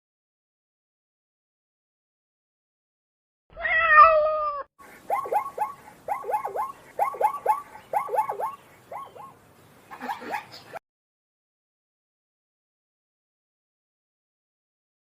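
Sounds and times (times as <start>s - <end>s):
cat meowing: 3.6s - 4.7s.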